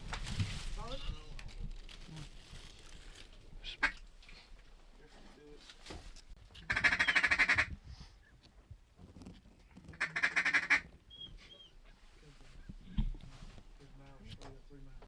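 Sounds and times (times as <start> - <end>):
duck call quacking: 3.6 - 4.0, 6.6 - 7.7, 9.9 - 10.8.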